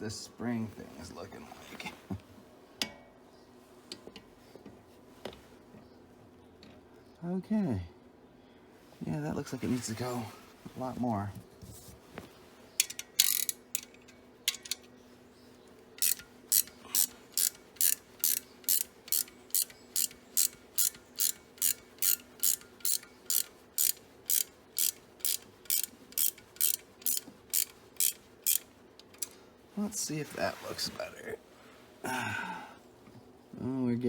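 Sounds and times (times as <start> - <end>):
ratcheting wrench clicking: 12.8 - 14.9, 16.0 - 29.4.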